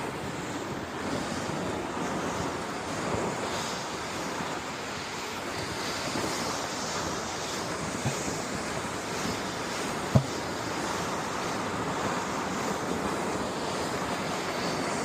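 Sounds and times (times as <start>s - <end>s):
wind noise on microphone: 0.0s - 15.0s
dull thump: 10.1s - 10.4s
sharp knock: 10.1s - 10.4s.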